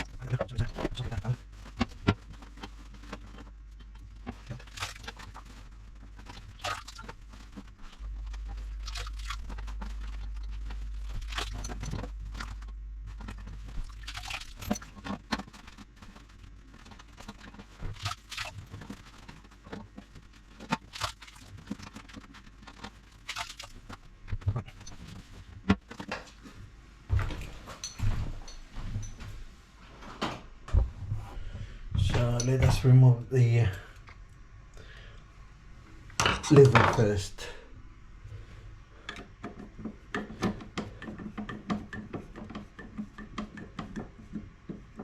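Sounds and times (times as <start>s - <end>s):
low hum: 0.0s - 17.4s
hands and container in toilet cistern: 0.0s - 29.3s, 38.4s - 45.0s.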